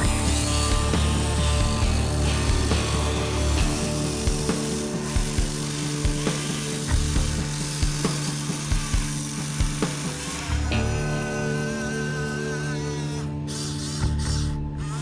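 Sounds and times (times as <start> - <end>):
ratcheting clicks from gears: 0.0 - 10.9
electric motors whining: 0.0 - 15.0.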